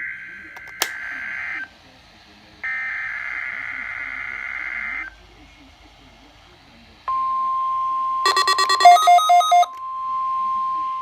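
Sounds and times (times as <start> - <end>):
fast electronic beeping: 8.3 - 9.7
harsh buzzing data burst: 8.3 - 9.7
steady alert tone: 8.3 - 9.7.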